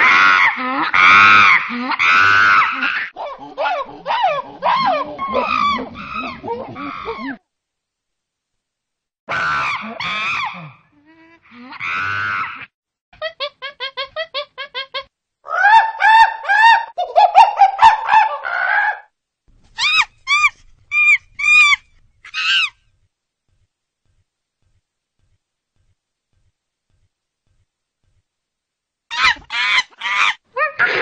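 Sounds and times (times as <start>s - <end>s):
bird-like squawks and calls: 19.8s - 22.8s, 29.1s - 31.0s.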